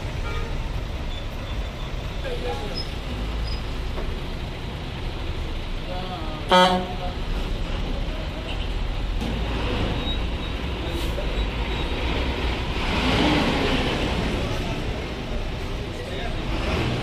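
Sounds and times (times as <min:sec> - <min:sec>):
bus engines rumbling: 0:00.0 - 0:17.0
bus horn blast: 0:00.2 - 0:00.8, 0:06.5 - 0:07.1.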